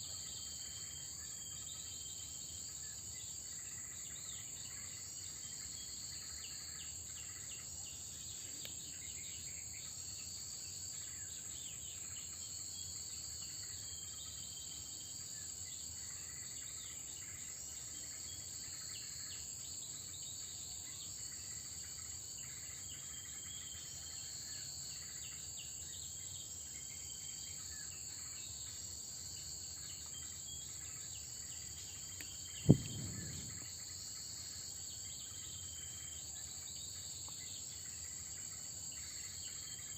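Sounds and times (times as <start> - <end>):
insect chorus: 0.0 - 39.9
faint short chirps: 32.6 - 33.7
sudden thump: 32.6 - 33.8.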